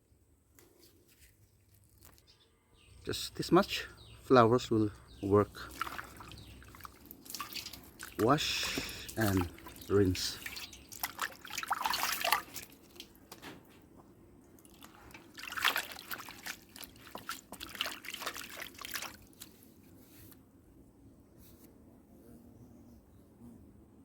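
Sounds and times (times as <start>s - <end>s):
water splashing and trickling: 3.1s - 13.7s, 14.5s - 19.7s.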